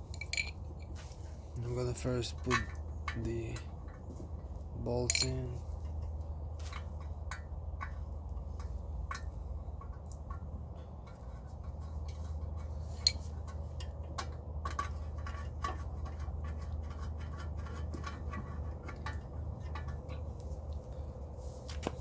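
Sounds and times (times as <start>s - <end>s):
metal clicking and clinking: 0.1s - 0.9s, 4.9s - 12.2s.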